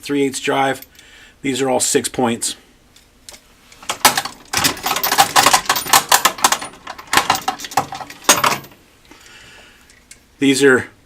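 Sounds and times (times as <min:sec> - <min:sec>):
metal tools clinking in drawer: 0:03.8 - 0:08.8.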